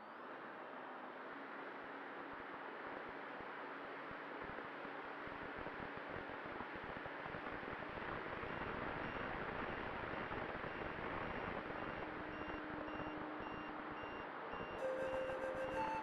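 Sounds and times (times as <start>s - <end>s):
held flute-like note: 14.8s - 16.0s.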